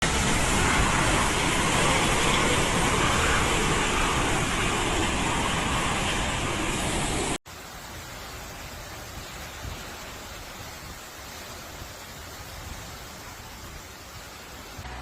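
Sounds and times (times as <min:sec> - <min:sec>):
loud steady rushing noise: 0:00.0 - 0:08.0.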